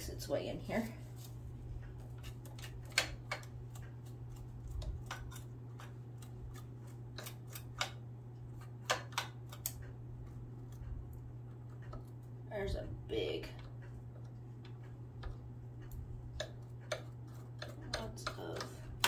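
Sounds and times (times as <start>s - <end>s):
low steady hum: 0.0s - 19.0s
small clicks and taps of tools: 1.8s - 6.6s, 11.5s - 12.2s, 13.6s - 19.0s.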